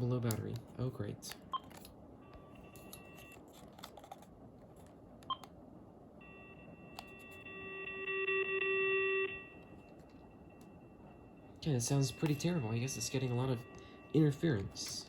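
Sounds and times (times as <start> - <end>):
high-pitched whine: 6.2 - 15.0.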